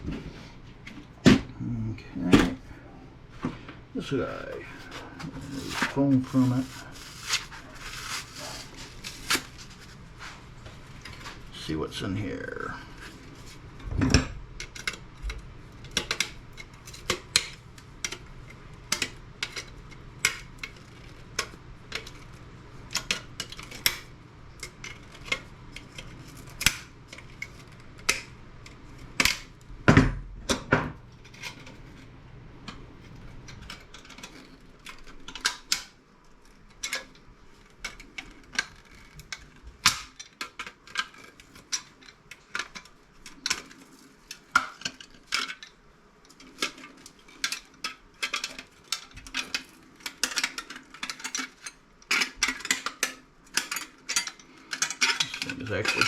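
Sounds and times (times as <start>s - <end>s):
hand tools clicking and knocking: 46.6s - 56.0s.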